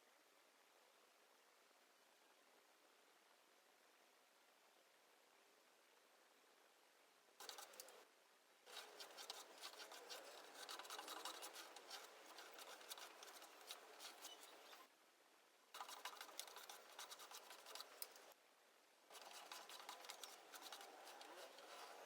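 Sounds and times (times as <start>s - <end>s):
hand tool scratching wood: 7.4s - 7.9s, 8.7s - 14.9s, 15.8s - 18.3s, 19.1s - 22.0s.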